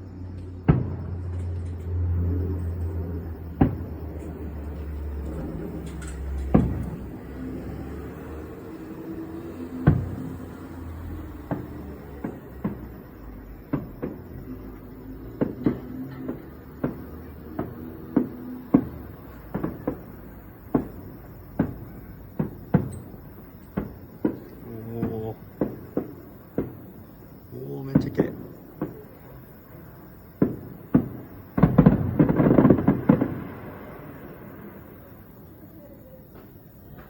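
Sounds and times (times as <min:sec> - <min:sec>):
firework shells bursting: 0:00.3 - 0:35.4.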